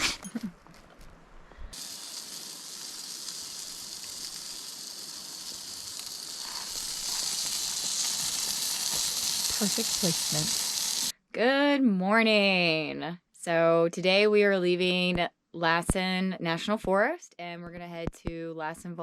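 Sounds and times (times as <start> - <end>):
food sizzling on a grill: 1.7 - 11.1.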